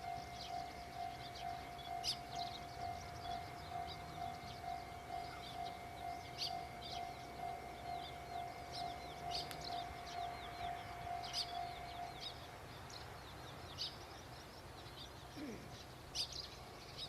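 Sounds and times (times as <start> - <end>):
level crossing bell ringing: 0.0 - 12.3
small birds chirping: 0.0 - 17.0.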